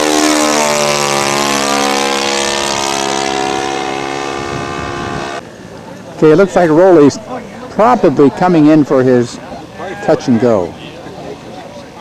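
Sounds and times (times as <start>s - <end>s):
model airplane engine droning: 0.0s - 5.4s.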